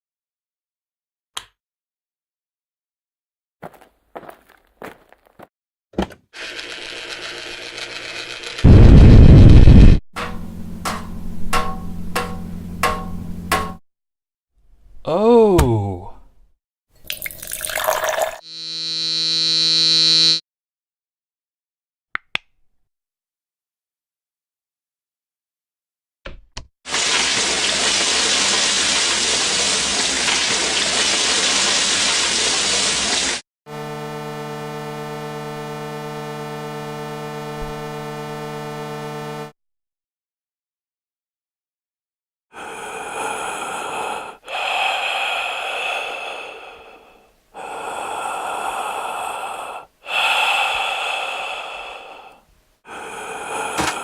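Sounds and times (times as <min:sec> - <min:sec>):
knocks: 0:10.2 - 0:13.8, 0:53.8 - 0:54.0
running water rushing: 0:26.9 - 0:33.4
heavy human breathing: 0:42.5 - 0:54.0.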